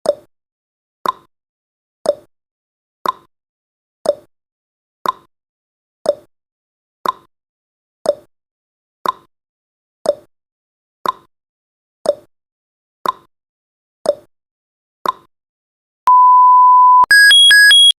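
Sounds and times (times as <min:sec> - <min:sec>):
electronic alarm changing tones: 0:16.1 - 0:18.0
steady electronic beep: 0:16.1 - 0:18.0.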